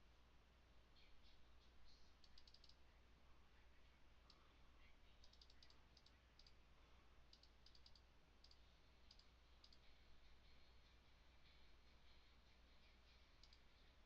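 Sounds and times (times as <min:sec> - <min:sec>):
low electrical hum: 0:00.0 - 0:14.0
computer mouse clicks: 0:02.2 - 0:02.8, 0:05.2 - 0:06.6, 0:07.3 - 0:09.8, 0:13.4 - 0:13.7.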